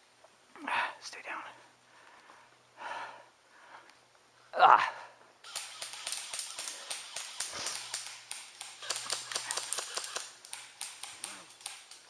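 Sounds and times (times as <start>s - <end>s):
airsoft gunfire snaps: 5.5s - 12.0s.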